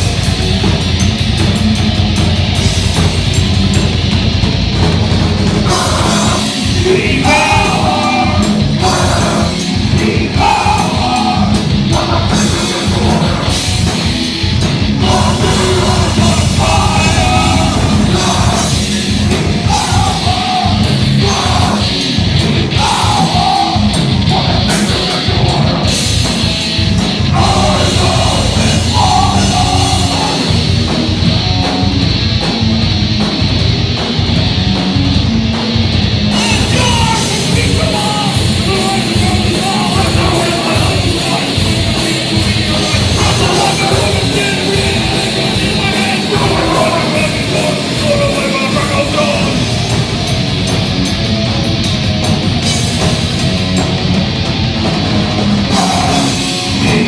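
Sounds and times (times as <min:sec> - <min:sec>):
heavy metal band playing: 0:00.0 - 0:57.0
vocalist singing: 0:05.6 - 0:14.1, 0:14.8 - 0:26.3, 0:27.0 - 0:31.0, 0:36.3 - 0:50.0, 0:55.6 - 0:57.0.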